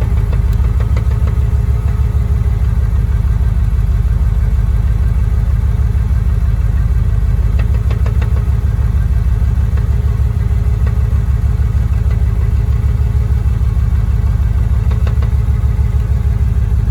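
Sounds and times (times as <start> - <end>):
shifter rattling clicks: 0.0 - 2.4, 7.2 - 16.8
car engine idling: 0.0 - 16.9.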